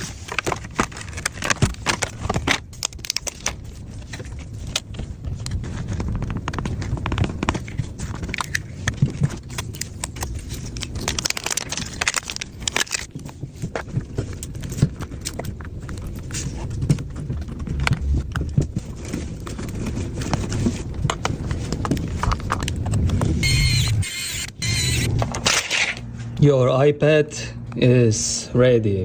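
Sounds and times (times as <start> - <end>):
hard objects clicking and scraping: 0.0 - 26.1.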